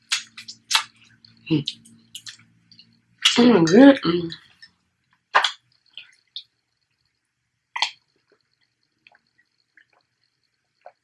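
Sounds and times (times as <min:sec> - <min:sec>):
wet mouth eating sounds: 0:00.0 - 0:03.5, 0:04.6 - 0:06.5, 0:07.8 - 0:10.1.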